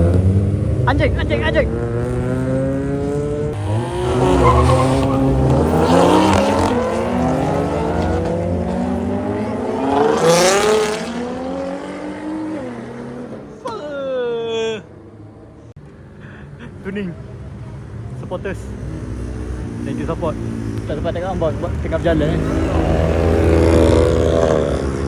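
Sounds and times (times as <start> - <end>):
car engines revving and accelerating: 0.0 - 13.7, 17.1 - 25.0.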